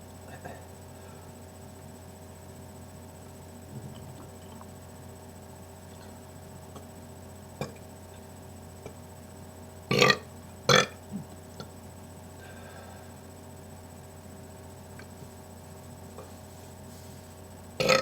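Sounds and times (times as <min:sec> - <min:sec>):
small short burps: 0:09.9 - 0:11.4, 0:17.8 - 0:18.0.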